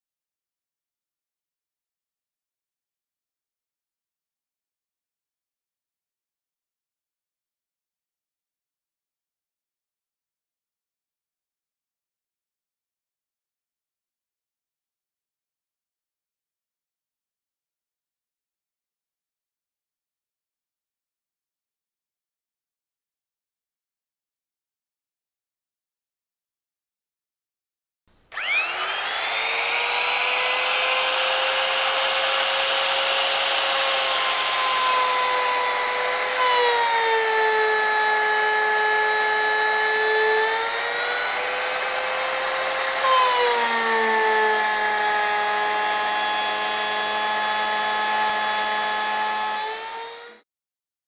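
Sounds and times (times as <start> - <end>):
electric power tool motor: 28.3 - 50.4.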